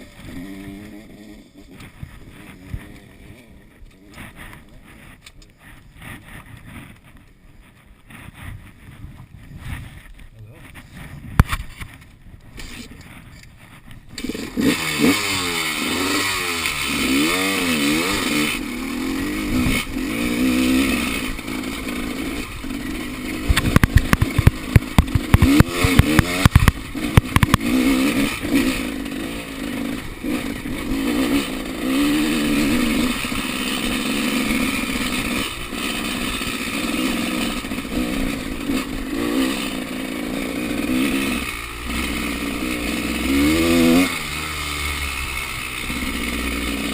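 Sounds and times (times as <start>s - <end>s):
motorcycle engine revving: 0.0s - 10.1s, 10.7s - 46.9s
sharp knocks and clatters: 23.5s - 27.7s.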